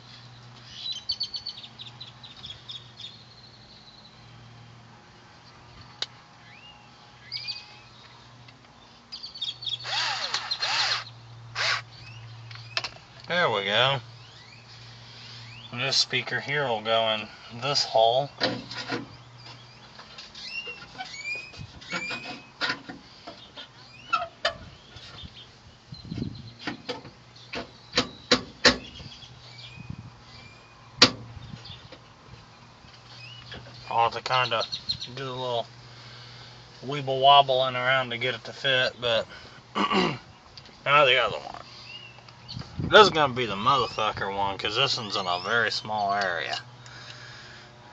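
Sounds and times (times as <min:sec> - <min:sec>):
bird chirps and harsh calls: 0:00.6 - 0:04.2, 0:08.8 - 0:12.9, 0:14.1 - 0:15.8, 0:19.1 - 0:22.6, 0:23.3 - 0:30.8, 0:32.6 - 0:35.2, 0:43.6 - 0:44.2.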